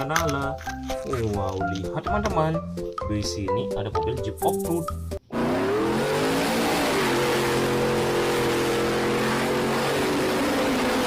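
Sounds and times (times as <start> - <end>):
car engine revving: 5.3 - 11.0.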